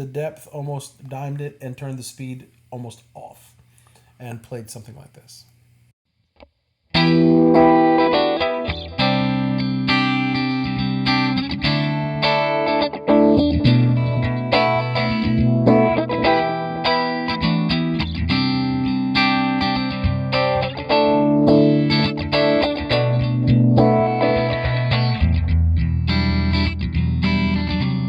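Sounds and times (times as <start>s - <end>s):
electric guitar chords with chorus: 6.9s - 28.0s.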